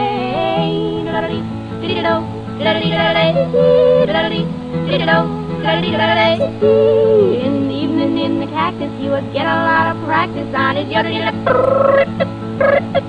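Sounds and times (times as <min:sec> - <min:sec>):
guitar accompaniment: 0:00.0 - 0:13.0
person yodelling: 0:03.4 - 0:04.2, 0:06.4 - 0:07.5.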